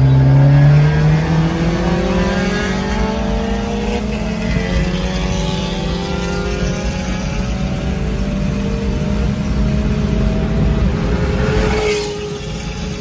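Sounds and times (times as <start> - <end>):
car engine accelerating: 0.0 - 13.0.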